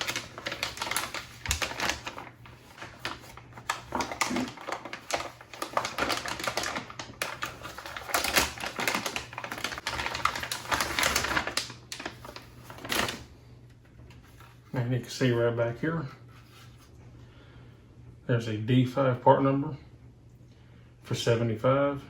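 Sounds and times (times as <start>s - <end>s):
plastic parts clicking and crackling: 0.0s - 13.2s.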